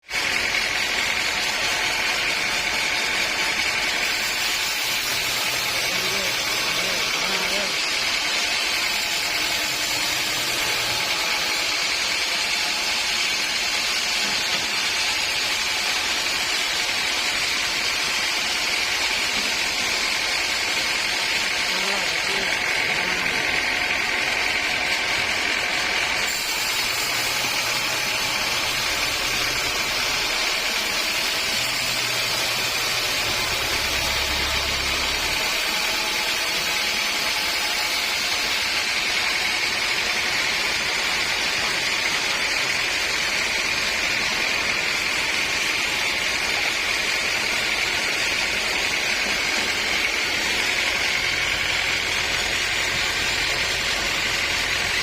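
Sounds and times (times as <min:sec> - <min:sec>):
sawmill machinery whining: 0:00.0 - 0:55.0.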